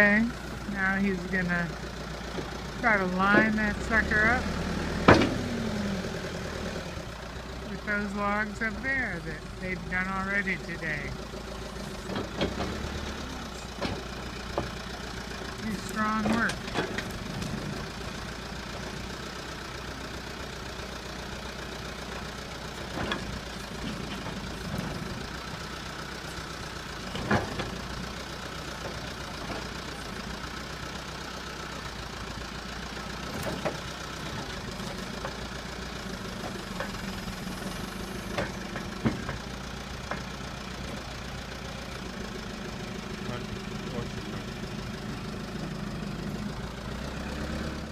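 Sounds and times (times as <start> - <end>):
diesel engine running: 0.0 - 47.9
sharp knocks and clanks: 5.0 - 5.5, 12.0 - 13.0, 38.2 - 39.5.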